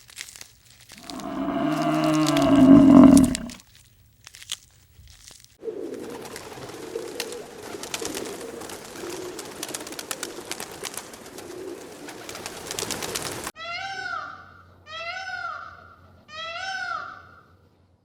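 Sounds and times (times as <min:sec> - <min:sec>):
pigeons cooing: 0:01.0 - 0:03.6, 0:05.7 - 0:13.0.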